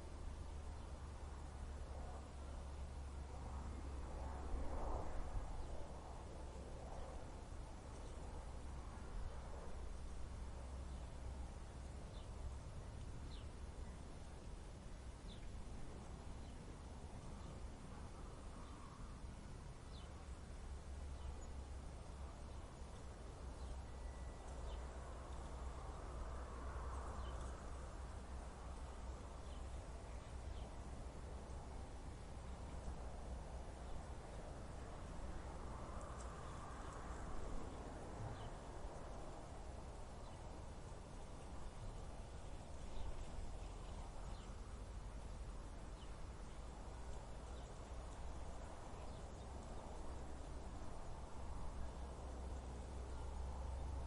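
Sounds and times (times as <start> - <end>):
wind blowing with low rumble: 0.0 - 54.0.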